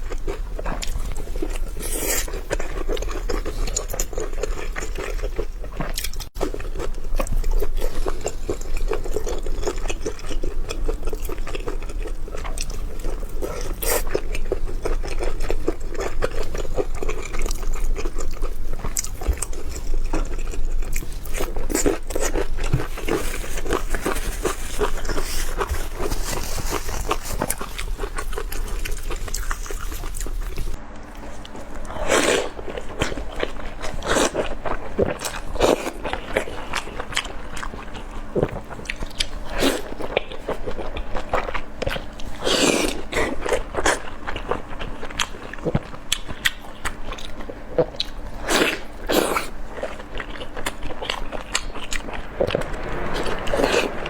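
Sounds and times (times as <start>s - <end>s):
person chewing dumplings: 0.0s - 54.0s.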